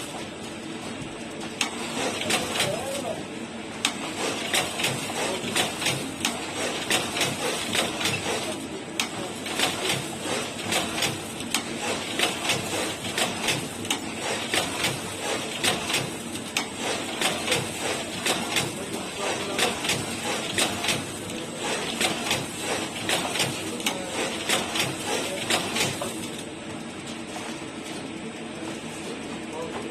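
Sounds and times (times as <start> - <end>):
machine mechanism clicking: 3.8 - 21.2.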